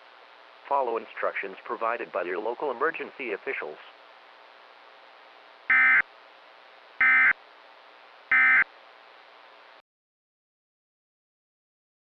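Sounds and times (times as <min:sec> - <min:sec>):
digital data tone bursts: 0:05.7 - 0:06.0, 0:07.0 - 0:07.4, 0:08.3 - 0:08.7.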